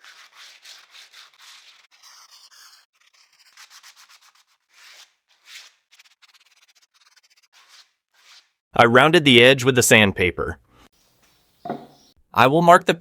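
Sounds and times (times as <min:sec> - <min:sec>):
sandpaper rasping on wood: 0:00.0 - 0:08.6.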